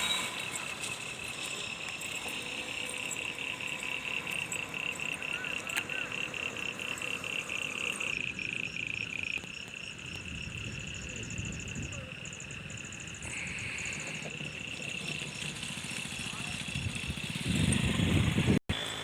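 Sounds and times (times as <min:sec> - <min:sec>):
pulsing call: 0:00.0 - 0:08.1
steady buzzing call: 0:00.0 - 0:09.0, 0:13.2 - 0:17.5
insects and frogs trilling: 0:00.0 - 0:19.0.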